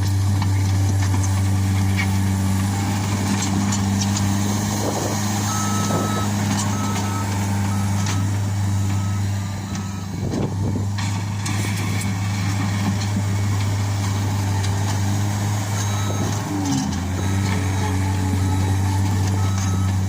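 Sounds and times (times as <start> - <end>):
diesel engine running: 0.0 - 20.0
backup alarm beeping: 5.4 - 10.8, 15.8 - 16.5, 17.2 - 20.0.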